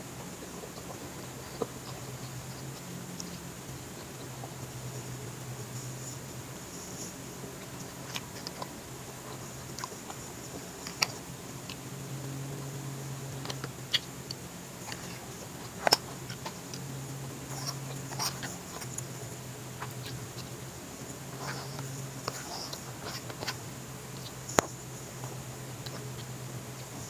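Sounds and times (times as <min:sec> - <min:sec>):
low steady hum: 0:00.0 - 0:27.0
soft chewing: 0:00.0 - 0:27.0.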